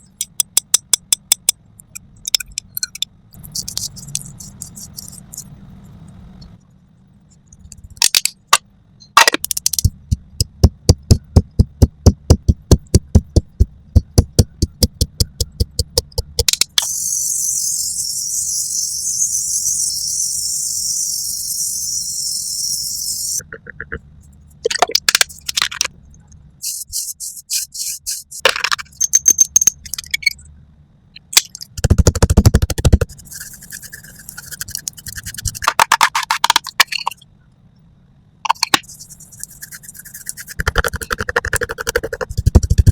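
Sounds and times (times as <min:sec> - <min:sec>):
fast sharp tapping: 0:09.4 - 0:16.8, 0:31.8 - 0:36.9, 0:38.5 - 0:42.9
steady high hiss: 0:16.8 - 0:23.4
brushing strokes: 0:26.6 - 0:28.4, 0:33.0 - 0:36.3, 0:38.8 - 0:42.9.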